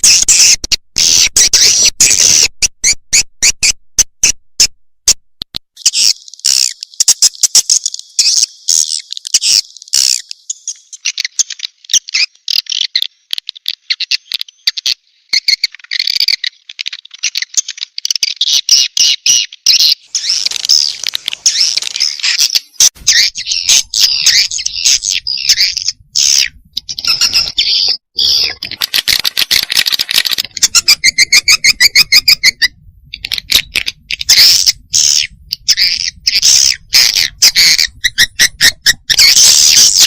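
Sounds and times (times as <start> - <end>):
high-pitched bird twittering: 18.8 - 28.6, 30.5 - 40.0
rapid sharp clicks: 28.6 - 30.9.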